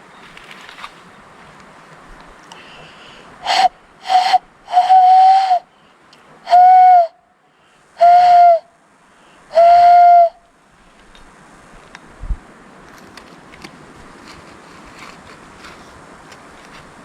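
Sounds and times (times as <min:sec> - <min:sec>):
shrill whistle blasts: 0:03.5 - 0:05.6, 0:08.0 - 0:08.6.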